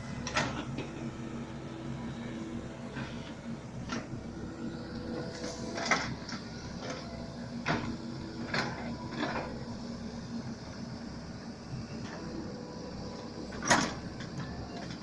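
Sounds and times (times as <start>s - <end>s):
excavator machine hum: 0.0s - 15.0s.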